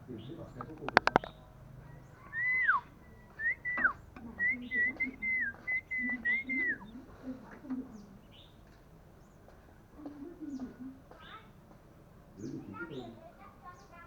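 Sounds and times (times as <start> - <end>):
whistled notes: 2.3 - 6.9.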